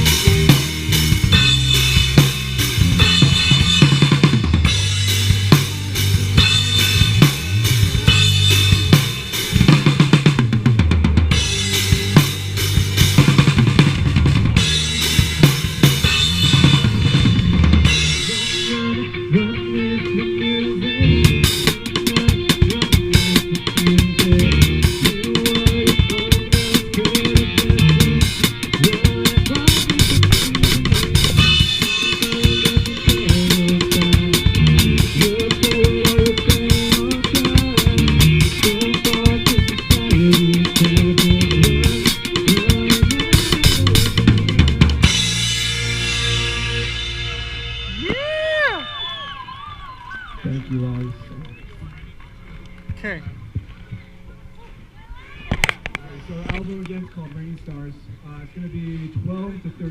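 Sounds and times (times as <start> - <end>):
live rock band playing: 0.0 - 49.1
drum kit hits: 21.3 - 48.3.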